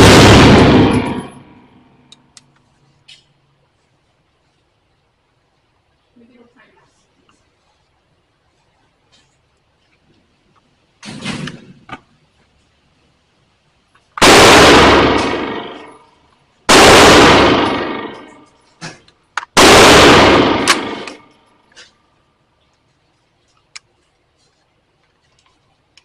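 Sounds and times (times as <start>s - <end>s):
gunshots with long echo: 0.0s - 2.1s, 14.2s - 21.6s.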